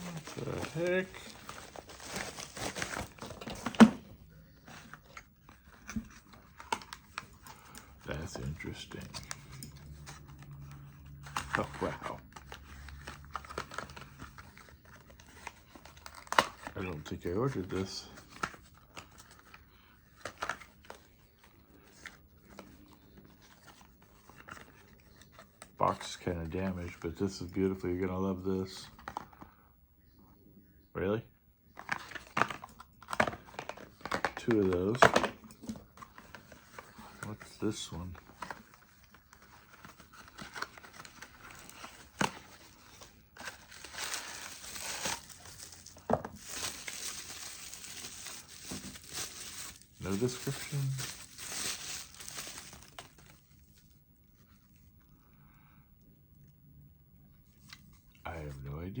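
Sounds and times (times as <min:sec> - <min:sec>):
cardboard packaging clicks and rustles: 0:00.0 - 0:25.8, 0:31.8 - 0:54.8
wrapping tearing: 0:38.4 - 0:53.4.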